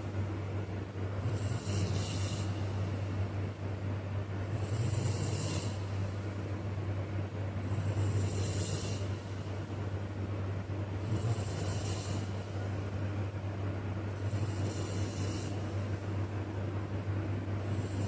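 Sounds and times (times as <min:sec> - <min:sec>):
steady low hum: 0:00.0 - 0:18.0
person snoring: 0:01.2 - 0:02.9, 0:04.4 - 0:06.0, 0:07.6 - 0:09.3, 0:11.0 - 0:12.4, 0:14.2 - 0:15.8, 0:17.6 - 0:18.0.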